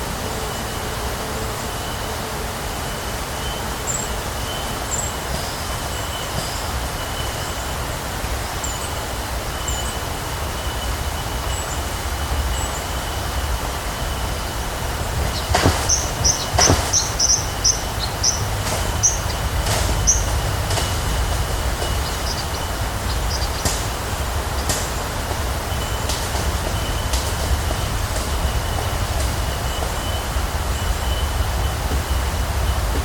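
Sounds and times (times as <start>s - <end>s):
steady hiss and low rumble: 0.0s - 33.0s
sharp knocks: 15.2s - 25.4s.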